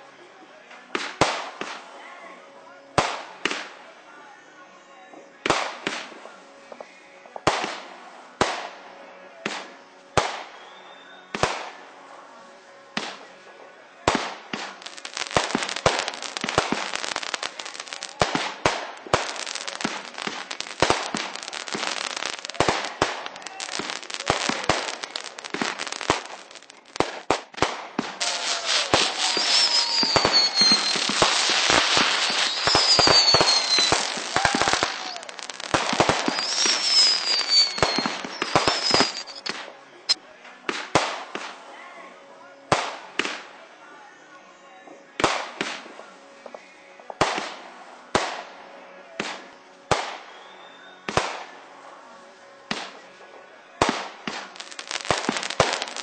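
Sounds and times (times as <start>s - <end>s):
firework bangs: 14.1s - 39.6s, 53.8s - 56.0s
rapid crackling firework barrage: 14.1s - 39.6s, 53.8s - 56.0s
high falling firework whistles: 28.2s - 39.5s, 50.1s - 51.0s.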